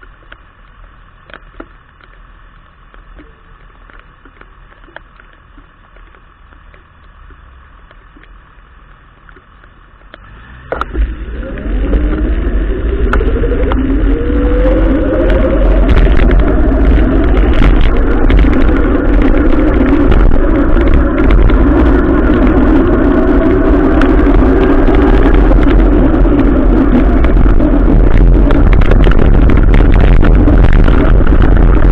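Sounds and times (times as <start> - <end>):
rain hiss with light ticks: 0.0 - 31.9
wind rumble on microphone: 0.0 - 31.9
vehicle engine accelerating: 10.1 - 31.9.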